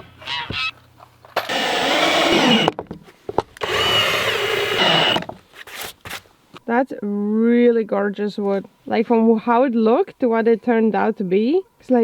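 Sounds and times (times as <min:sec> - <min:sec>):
electric sander on wood: 0:01.5 - 0:02.7, 0:03.6 - 0:05.2.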